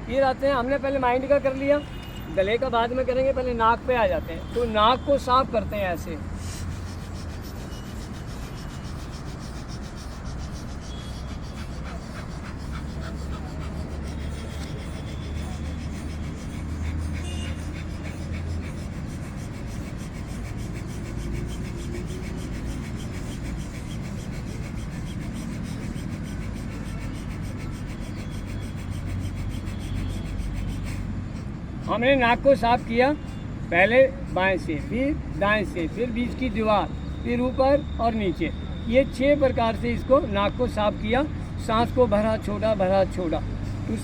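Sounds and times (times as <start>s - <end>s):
breathing through nose: 6.3s - 31.9s, 43.4s - 43.9s
fingers rubbing nose: 6.3s - 36.7s.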